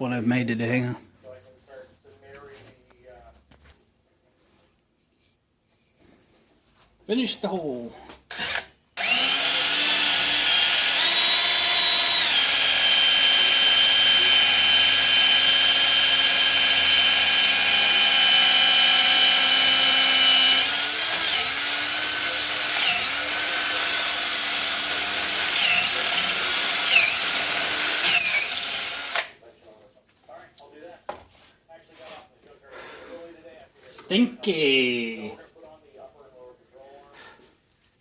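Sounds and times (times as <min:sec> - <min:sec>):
electric drill boring: 0:08.3 - 0:29.3.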